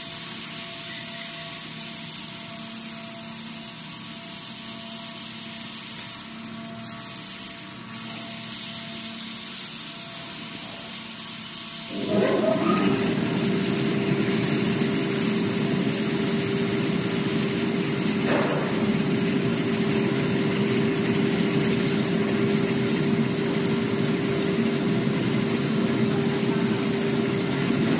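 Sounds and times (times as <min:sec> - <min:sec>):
cutting machine running: 0:11.9 - 0:27.9.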